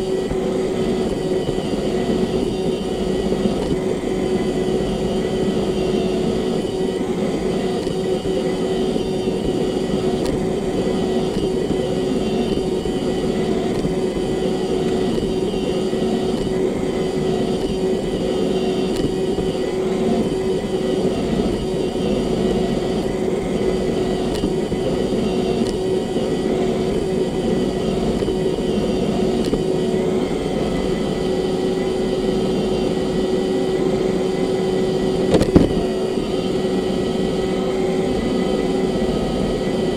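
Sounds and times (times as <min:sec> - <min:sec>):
robot vacuum running: 0:00.0 - 0:39.9.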